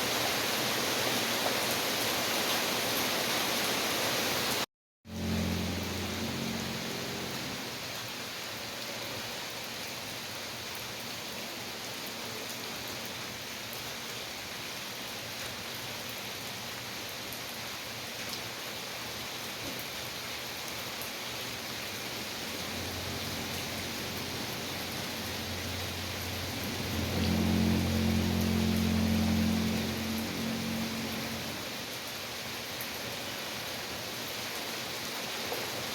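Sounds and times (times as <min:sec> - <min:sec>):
steady rain: 0:00.0 - 0:35.9
low hum: 0:05.1 - 0:07.8, 0:22.3 - 0:31.8.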